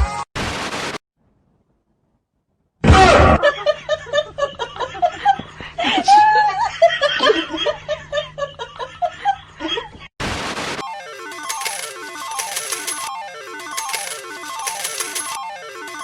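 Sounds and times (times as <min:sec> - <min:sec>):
person laughing hard: 0:02.9 - 0:10.0.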